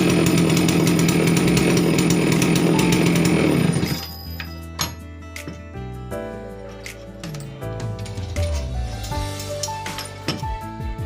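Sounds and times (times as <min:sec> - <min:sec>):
background music with held notes: 0:04.0 - 0:11.0.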